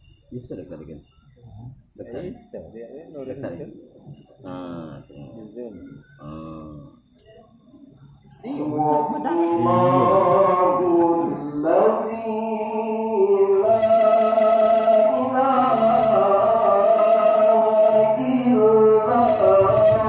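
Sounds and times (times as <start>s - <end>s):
person reciting melodically: 4.4s - 7.1s, 8.3s - 20.0s.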